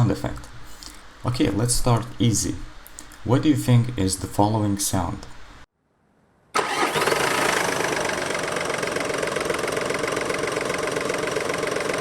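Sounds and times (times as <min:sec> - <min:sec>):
diesel engine starting and idling: 0:06.6 - 0:12.0.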